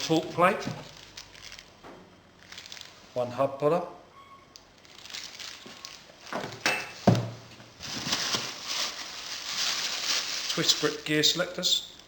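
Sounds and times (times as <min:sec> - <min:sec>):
packaging rustling and handling: 0:00.0 - 0:01.8, 0:02.4 - 0:03.2, 0:04.6 - 0:11.4.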